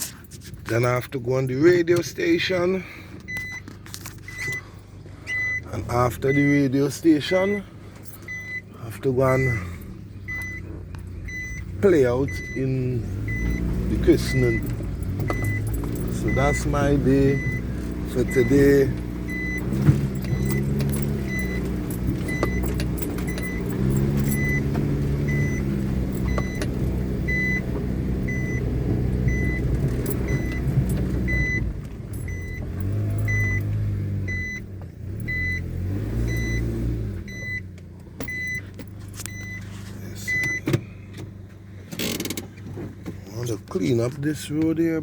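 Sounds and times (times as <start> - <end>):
car engine revving: 2.0 - 44.8
electronic warning chime beeping: 9.4 - 9.7, 11.3 - 26.6, 27.3 - 28.7.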